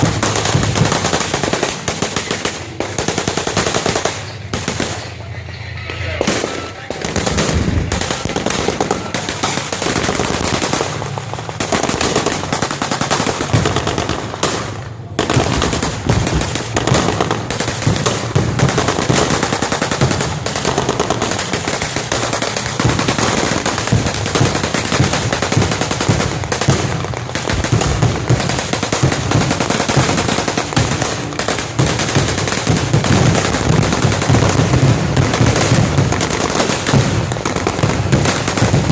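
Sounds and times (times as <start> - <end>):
rapid machine-gun fire: 0.0 - 5.2, 6.2 - 38.9.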